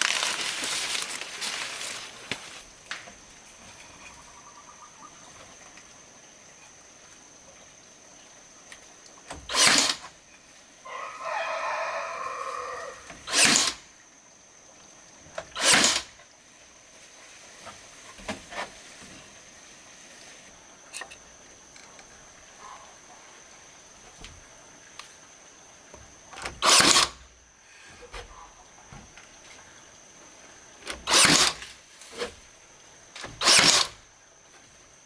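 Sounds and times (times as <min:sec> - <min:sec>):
rooster crowing: 0:10.8 - 0:13.2.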